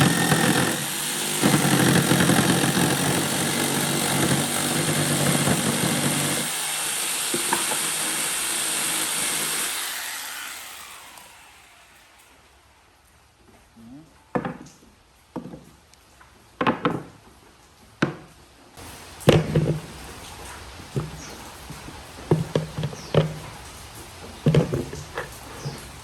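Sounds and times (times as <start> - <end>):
wooden knocks and thuds: 19.2 - 20.1, 20.9 - 23.6, 24.3 - 25.8.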